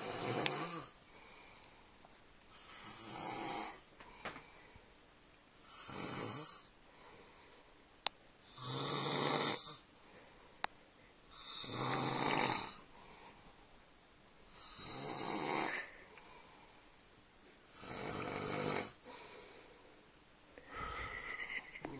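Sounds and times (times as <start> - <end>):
man snoring loudly: 0.0 - 1.0, 2.6 - 3.8, 5.6 - 6.7, 8.5 - 9.8, 11.4 - 12.8, 14.5 - 15.9, 17.7 - 19.0.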